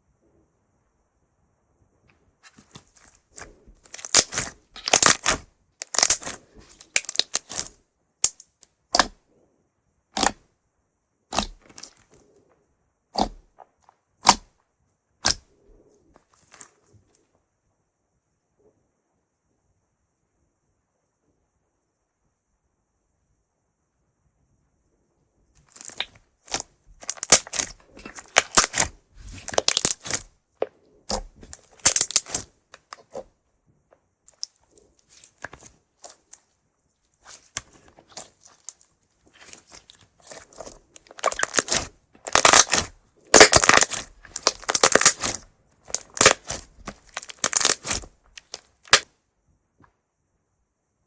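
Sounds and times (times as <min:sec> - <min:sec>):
slime sticky clicks and crackles: 0:25.7 - 0:30.3, 0:31.1 - 0:33.2, 0:39.4 - 0:49.0.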